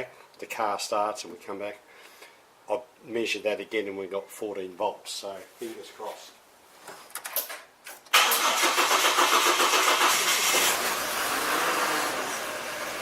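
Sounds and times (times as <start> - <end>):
car engine starting: 8.1 - 13.0.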